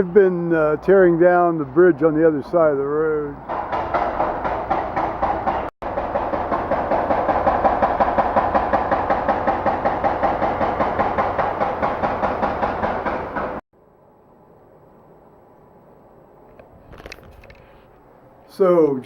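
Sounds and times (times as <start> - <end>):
demolition hammer pounding concrete: 3.4 - 13.6.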